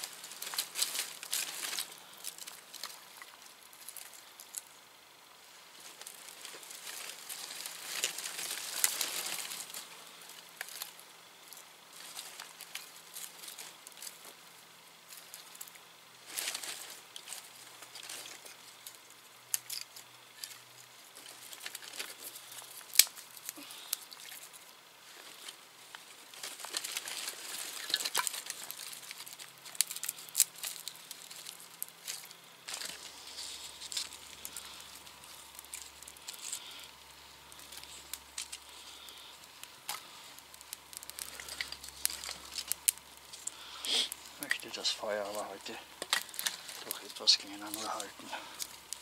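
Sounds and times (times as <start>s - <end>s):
campfire crackling and popping: 0.0s - 49.0s
fire hiss: 0.0s - 49.0s.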